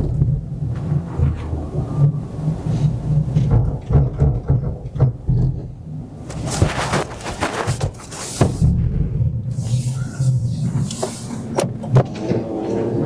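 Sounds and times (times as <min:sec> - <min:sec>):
tyres churning in snow: 0:06.0 - 0:13.0
car engine running: 0:06.2 - 0:12.0.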